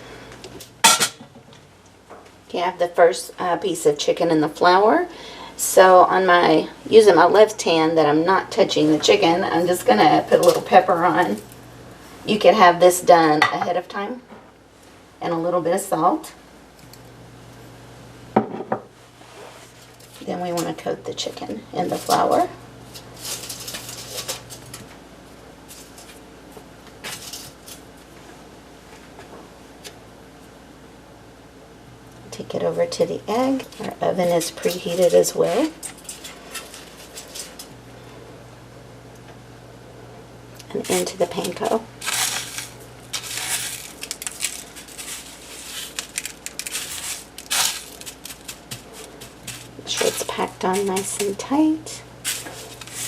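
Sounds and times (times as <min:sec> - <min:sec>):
small crackles and clicks: 0:40.6 - 0:51.2
breadcrumbs crunching and rustling: 0:40.8 - 0:51.4.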